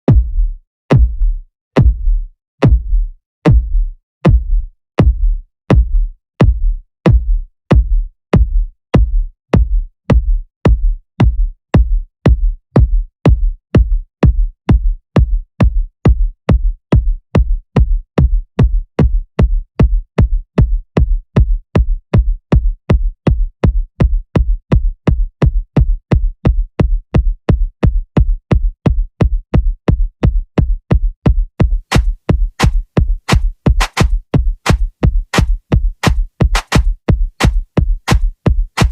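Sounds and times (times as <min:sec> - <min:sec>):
electronic kick drum hits: 0:00.1 - 0:06.0, 0:31.6 - 0:38.9.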